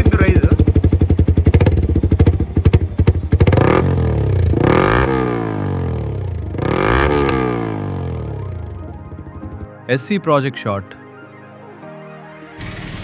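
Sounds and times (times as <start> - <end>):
motorcycle engine revving: 0.0 - 9.7, 12.6 - 13.0.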